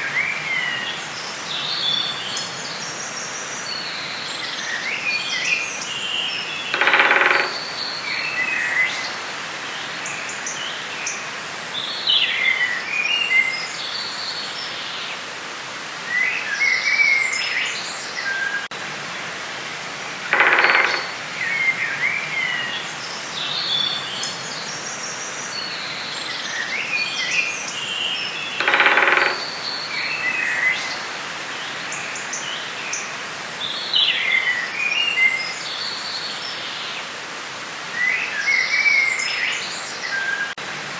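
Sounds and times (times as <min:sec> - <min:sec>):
steady background hiss: 0:00.0 - 0:40.9
birds singing and chirping: 0:01.6 - 0:09.2, 0:20.3 - 0:36.4
harsh bird call: 0:06.7 - 0:07.7, 0:20.3 - 0:21.8, 0:28.6 - 0:30.8.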